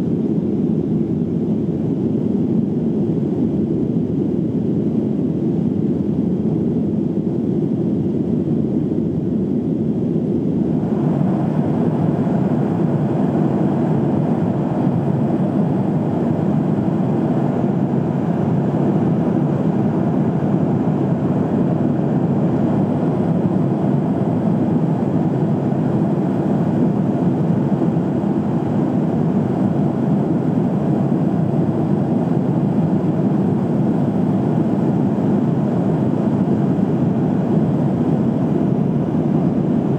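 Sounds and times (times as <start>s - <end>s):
airliner cabin jet engine rush: 0.0s - 39.9s.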